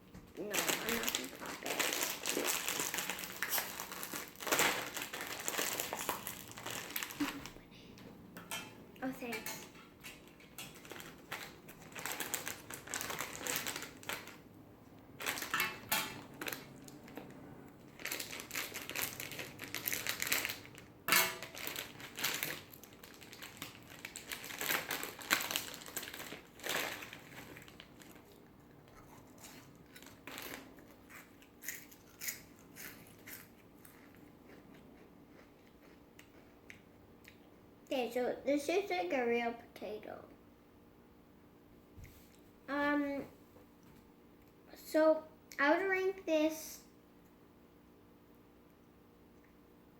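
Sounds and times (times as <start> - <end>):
chips crunching: 0.4 - 7.6, 10.1 - 14.5, 15.1 - 28.4, 29.0 - 36.8
plastic chip bag crinkling: 0.4 - 7.6, 10.0 - 34.6.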